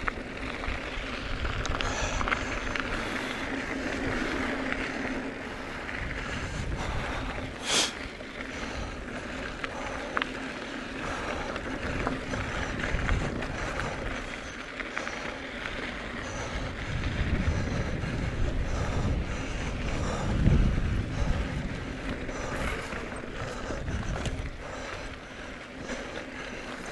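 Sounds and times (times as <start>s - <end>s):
bike tyres rumbling on dirt: 0.0s - 26.9s
wind on microphone: 5.5s - 7.6s, 11.0s - 14.4s, 16.1s - 25.2s.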